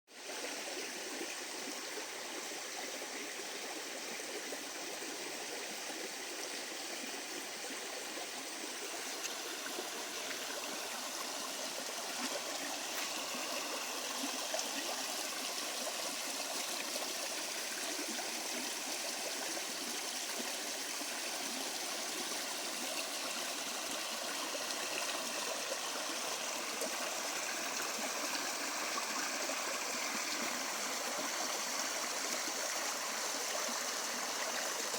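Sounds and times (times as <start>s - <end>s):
river gurgling over stones: 0.2s - 34.9s.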